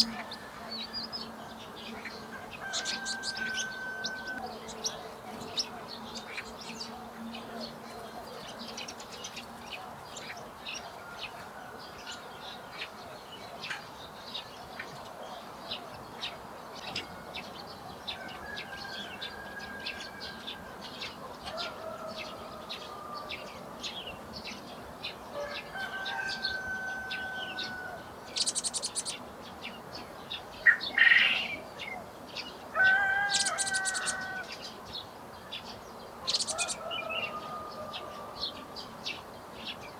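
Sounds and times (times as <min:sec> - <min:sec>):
songbirds chirping: 0:00.0 - 0:39.9.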